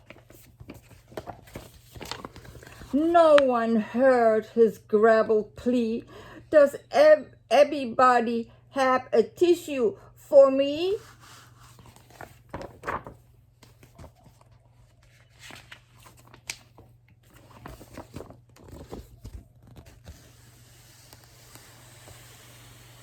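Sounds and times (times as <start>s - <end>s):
paper book pages rustling: 0.0s - 3.5s, 10.9s - 22.9s.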